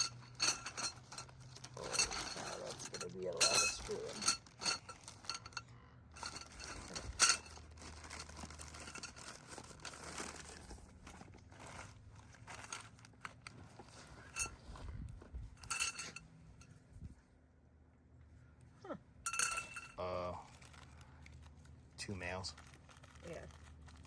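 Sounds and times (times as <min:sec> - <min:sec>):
metal parts clinking: 0:00.0 - 0:05.6, 0:06.2 - 0:10.6, 0:14.2 - 0:14.6, 0:15.6 - 0:16.2, 0:19.3 - 0:20.0
packaging rustling: 0:00.0 - 0:05.6, 0:06.2 - 0:14.5, 0:20.4 - 0:24.0.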